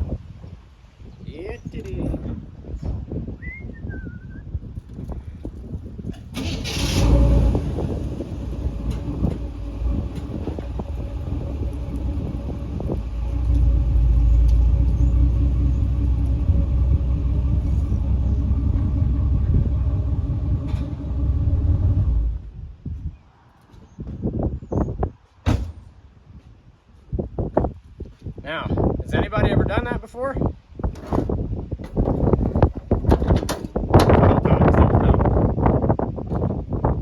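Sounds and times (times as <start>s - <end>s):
vehicle engine rumbling: 4.8s - 22.9s, 30.8s - 37.0s.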